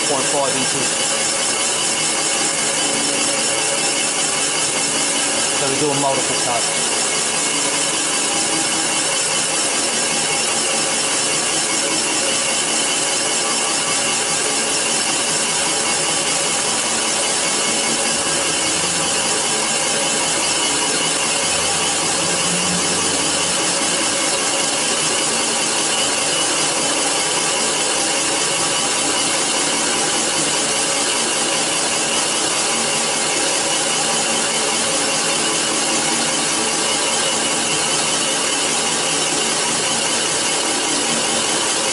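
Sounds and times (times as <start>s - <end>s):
boring tool cutting metal: 0.0s - 30.5s.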